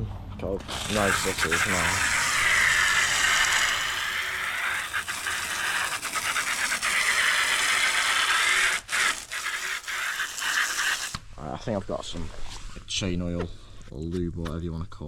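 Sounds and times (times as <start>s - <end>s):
scratchy washing of bike wheel: 0.6s - 11.2s.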